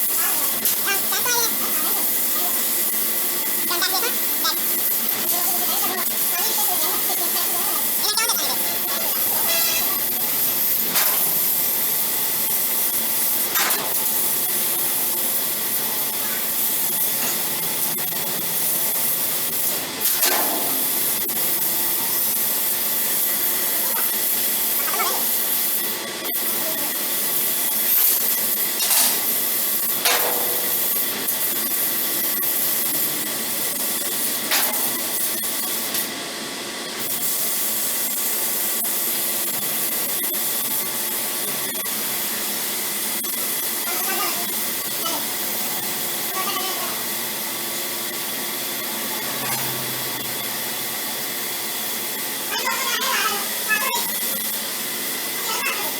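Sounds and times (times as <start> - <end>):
laser cutting machine hiss: 0.0 - 55.9.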